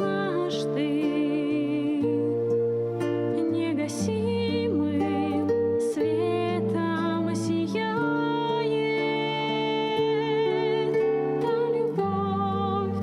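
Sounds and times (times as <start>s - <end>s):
slow gentle music: 0.0s - 13.0s.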